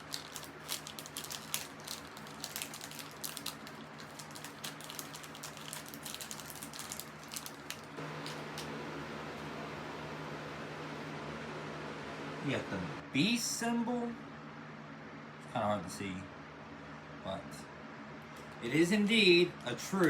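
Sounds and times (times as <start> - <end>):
chocolate wrapper crinkling: 0.0 - 8.7
steady low hum: 0.0 - 20.0.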